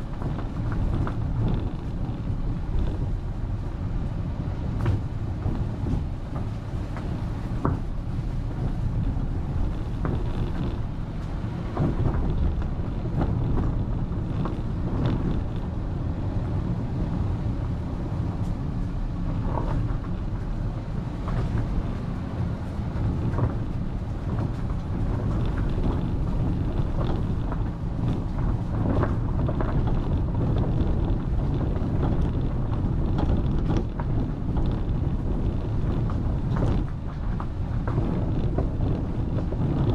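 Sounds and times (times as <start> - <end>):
road noise rumble: 0.0 - 39.9
wind on microphone: 0.0 - 39.9
knocks and clicks from bumps: 4.8 - 7.9, 8.6 - 15.7.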